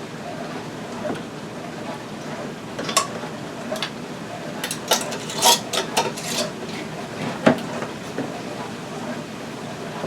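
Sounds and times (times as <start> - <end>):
glass jars knocking and clinking: 2.8 - 4.0, 4.6 - 6.8.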